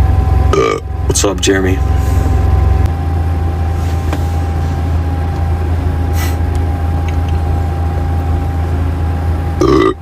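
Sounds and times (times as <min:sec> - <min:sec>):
thin steady tone: 0:00.0 - 0:05.0
low droning hum: 0:00.0 - 0:10.0.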